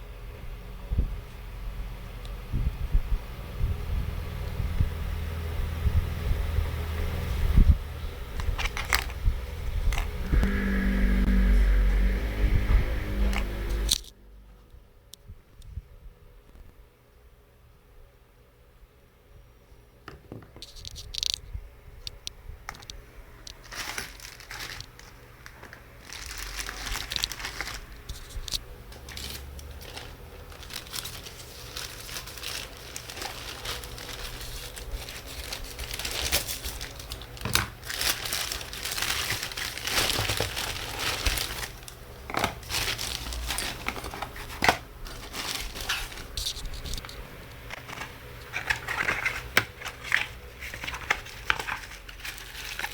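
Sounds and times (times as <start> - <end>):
crinkling and rustling: 8.3 - 10.7, 20.2 - 52.9.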